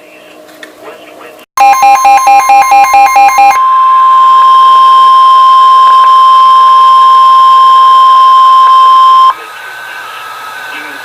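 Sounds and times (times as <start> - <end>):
fast alternating two-pitch beeping: 1.6 - 9.3
loud steady alarm tone: 1.6 - 9.3.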